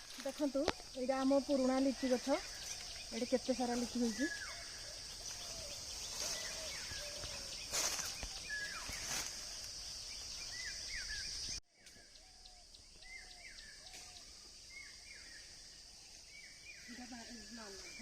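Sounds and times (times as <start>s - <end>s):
rustles: 0.0s - 11.0s
high insect buzz: 0.0s - 18.0s.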